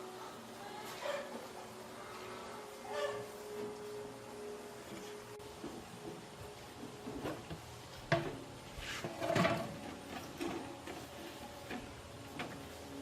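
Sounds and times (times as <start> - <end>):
hard objects knocking and clattering: 9.0 - 12.6.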